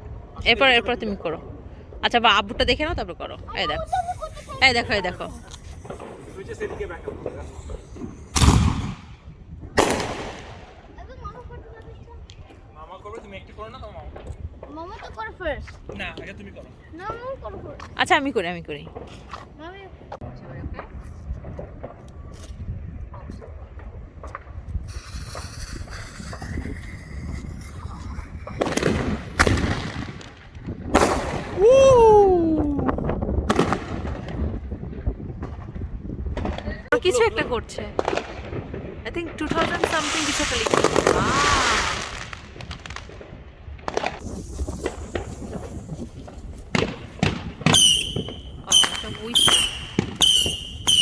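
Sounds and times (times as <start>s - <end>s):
firework bangs: 0.0s - 12.2s, 23.4s - 51.0s
firework hissing: 3.7s - 11.0s, 24.7s - 31.8s, 37.0s - 43.3s, 43.9s - 51.0s
high firework whistle: 39.8s - 42.4s, 47.6s - 51.0s.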